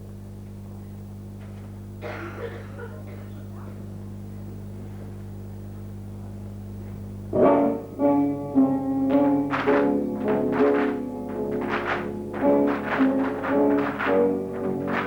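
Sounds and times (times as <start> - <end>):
low electrical hum: 0.0 - 15.0
faint murmur: 2.0 - 7.1.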